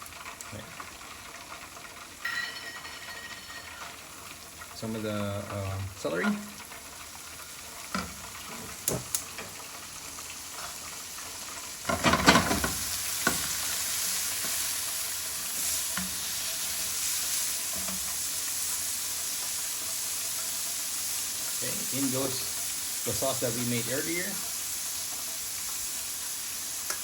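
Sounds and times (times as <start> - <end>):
vegetables sizzling in hot oil: 0.0 - 27.0
utensil clicking on pan: 7.8 - 9.7, 11.8 - 14.8.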